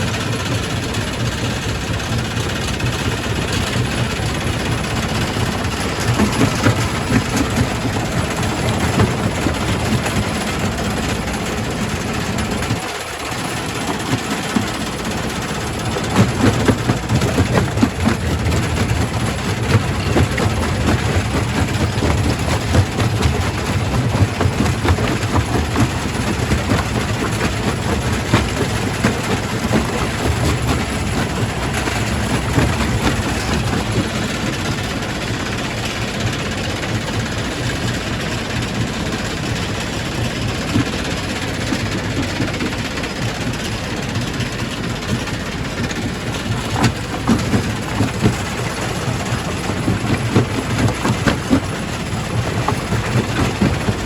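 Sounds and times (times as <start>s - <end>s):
rock crusher rumbling: 0.0s - 54.0s
rocks knocking and cracking: 4.1s - 34.8s, 44.6s - 54.0s.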